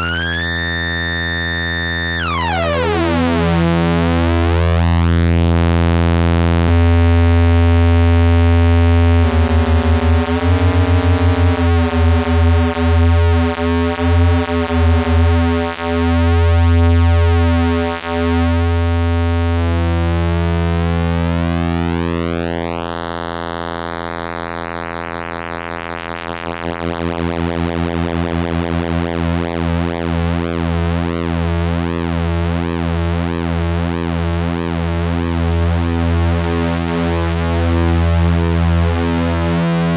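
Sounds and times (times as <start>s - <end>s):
buzzy synthesizer note: 0.0s - 19.1s.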